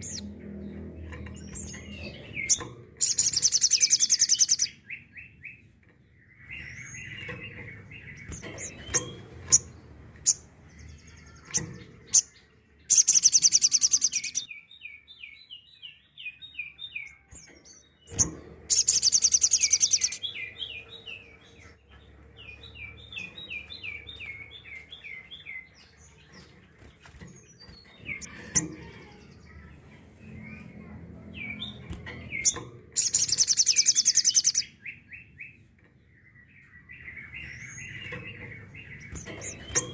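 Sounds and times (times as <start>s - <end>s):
bird trilling: 1.4s - 5.0s, 11.0s - 14.5s, 18.7s - 20.8s, 32.3s - 34.7s.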